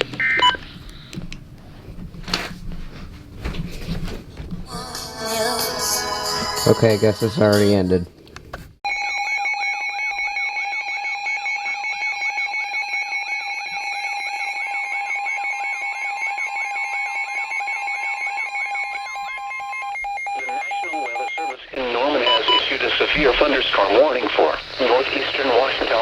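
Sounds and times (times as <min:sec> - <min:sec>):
warbling weather alert tone: 0:14.4 - 0:26.0.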